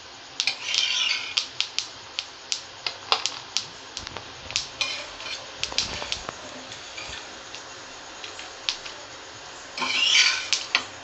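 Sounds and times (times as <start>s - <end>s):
utensils clinking on pan and plate: 4.8s - 7.2s, 9.8s - 10.8s.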